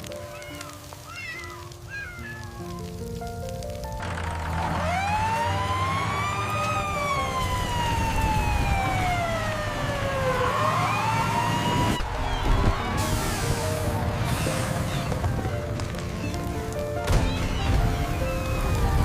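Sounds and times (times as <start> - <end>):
emergency siren wailing: 3.9 - 15.8, 17.4 - 19.0.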